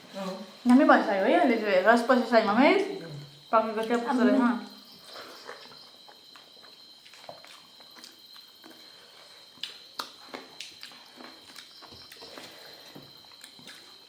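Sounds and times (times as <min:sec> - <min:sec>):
person chewing food: 0:05.0 - 0:14.0.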